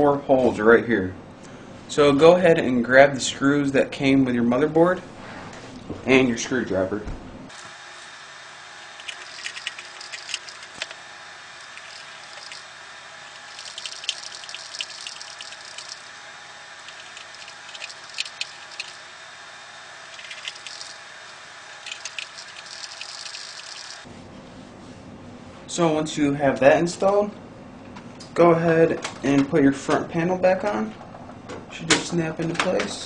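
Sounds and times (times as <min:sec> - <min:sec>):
screwdriver clicking and scraping: 0:08.8 - 0:11.0, 0:11.6 - 0:12.7, 0:16.9 - 0:19.0, 0:20.2 - 0:21.0, 0:21.8 - 0:24.0
steady hiss: 0:08.8 - 0:16.2, 0:16.8 - 0:19.1, 0:20.1 - 0:24.1.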